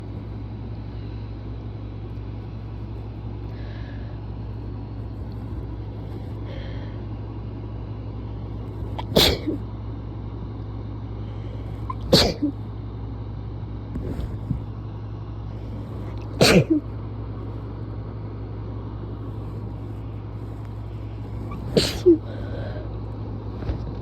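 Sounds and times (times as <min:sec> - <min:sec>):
steady low hum: 0:00.0 - 0:24.0
person sneezing: 0:09.0 - 0:09.6, 0:11.9 - 0:12.6, 0:16.2 - 0:16.8, 0:21.4 - 0:22.5.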